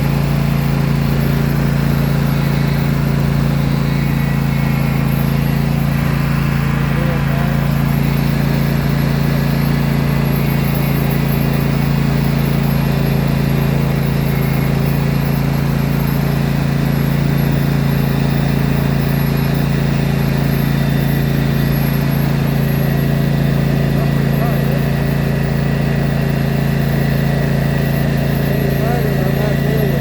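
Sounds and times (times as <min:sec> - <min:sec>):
lawn tractor engine running: 0:00.0 - 0:30.0.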